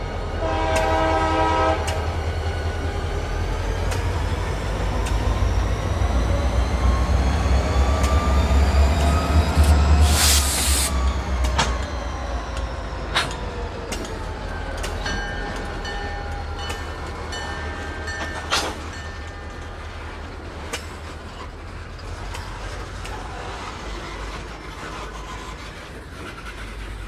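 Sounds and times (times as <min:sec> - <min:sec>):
freight train rumbling: 0:00.0 - 0:27.0
train wheel squeal: 0:00.0 - 0:27.0
wheels clicking over rail joints: 0:11.4 - 0:27.0.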